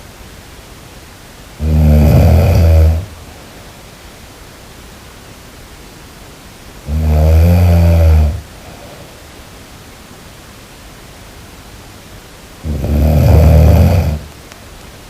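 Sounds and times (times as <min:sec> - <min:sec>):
background hiss: 0:00.0 - 0:15.0
person snoring: 0:01.6 - 0:03.2, 0:06.9 - 0:09.2, 0:12.6 - 0:14.3.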